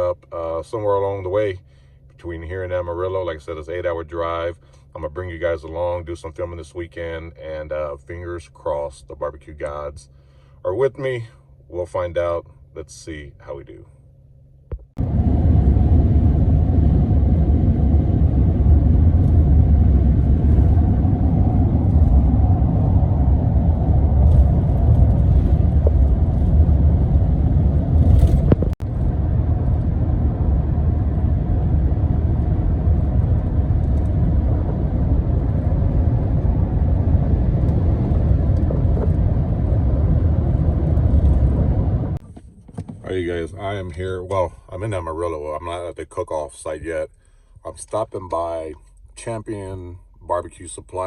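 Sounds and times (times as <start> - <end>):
vehicle driving on road: 14.7 - 43.6.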